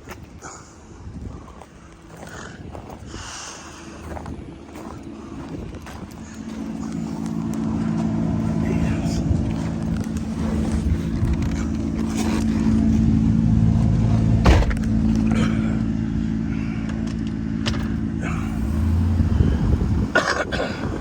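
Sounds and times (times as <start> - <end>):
vehicle engine running: 0.2 - 21.0.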